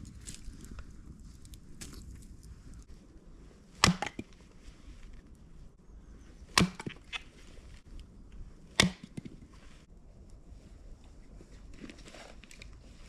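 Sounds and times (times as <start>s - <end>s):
axe chopping into wood: 3.8s - 4.3s, 6.5s - 7.1s, 8.7s - 9.3s.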